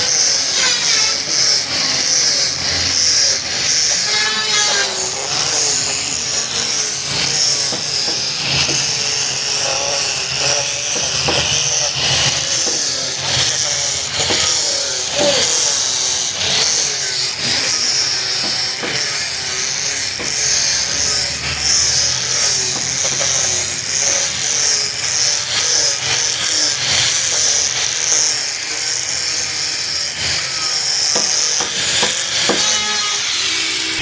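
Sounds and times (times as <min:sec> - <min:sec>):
power tool whining on wood: 0:00.0 - 0:34.0
scraping knocks: 0:16.5 - 0:24.2, 0:31.1 - 0:34.0.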